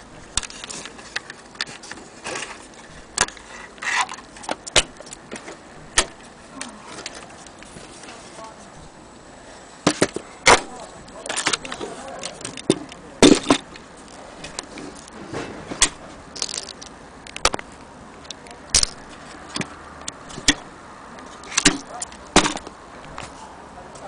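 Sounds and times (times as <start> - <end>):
hard object clicking and knocking: 18.3 - 20.7, 21.5 - 23.3.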